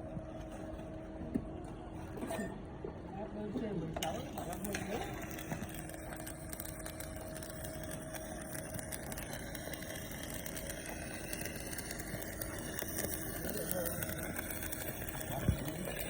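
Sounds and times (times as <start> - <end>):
welding arc crackling: 4.0 - 16.0
welding machine hum: 4.0 - 16.0.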